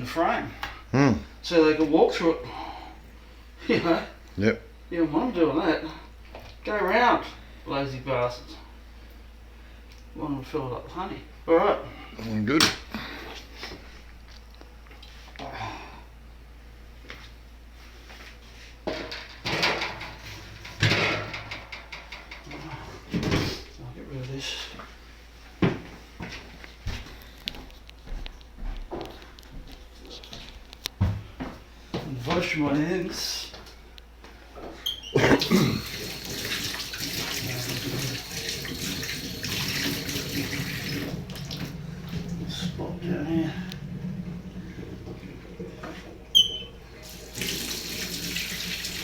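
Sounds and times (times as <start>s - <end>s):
tap water running into sink: 35.4s - 49.0s.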